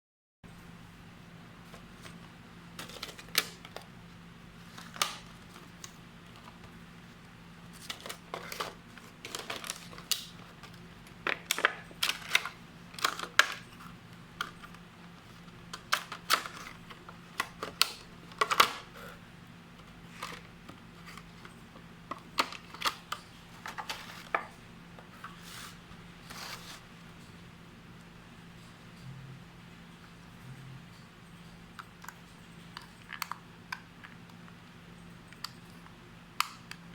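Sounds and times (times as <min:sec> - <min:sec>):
plastic parts clicking and tapping: 0:02.8 - 0:03.9, 0:07.7 - 0:19.1, 0:19.8 - 0:25.1.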